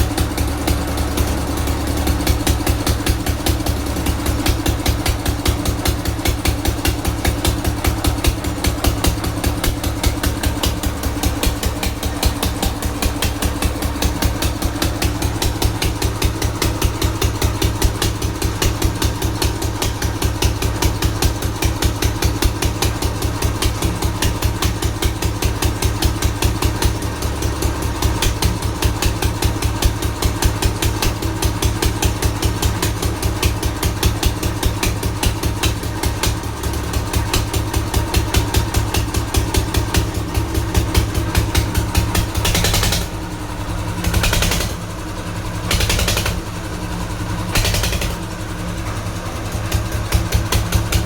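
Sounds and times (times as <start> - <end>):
old diesel engine knocking: 0.0 - 51.0.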